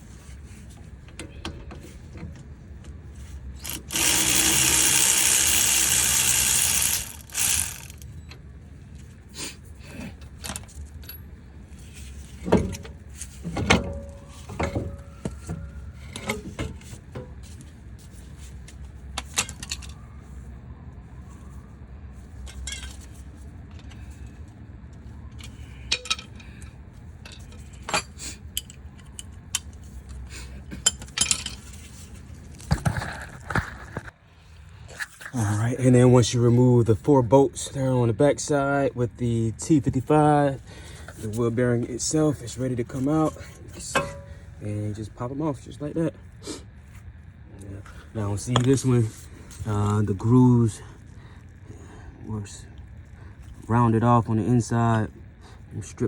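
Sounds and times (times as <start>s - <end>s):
metal tools clinking: 3.6s - 8.0s, 25.4s - 26.6s, 30.7s - 32.0s, 42.9s - 44.4s.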